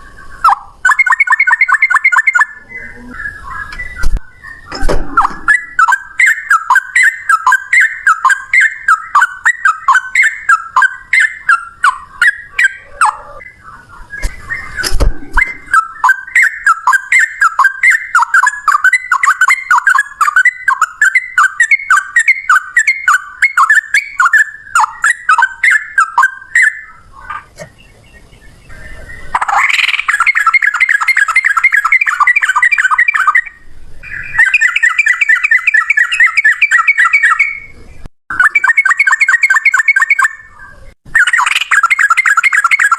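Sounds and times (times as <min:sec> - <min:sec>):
bird whistled song: 0:00.0 - 0:42.9
low thump: 0:04.0 - 0:05.5, 0:14.8 - 0:15.7.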